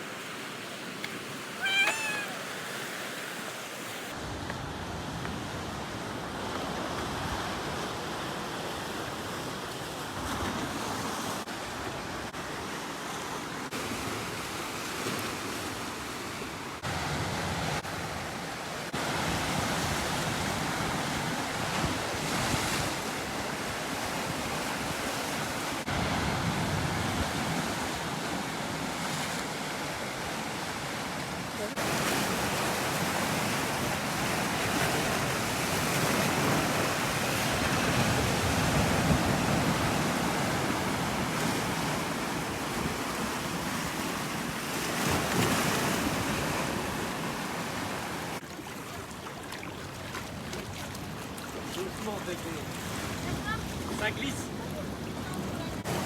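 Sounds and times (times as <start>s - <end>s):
sea surf: 0.0s - 56.0s
wind: 0.0s - 56.0s
short high-pitched call: 1.6s - 2.5s.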